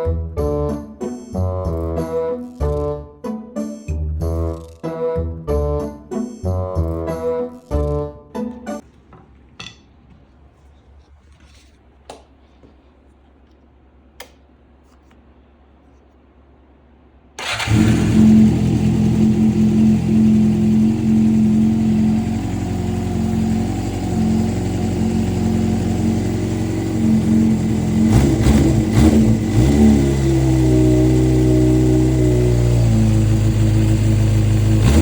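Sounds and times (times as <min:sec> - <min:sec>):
motorcycle engine idling: 0:17.4 - 0:35.0
motorcycle throttle blips: 0:17.4 - 0:35.0.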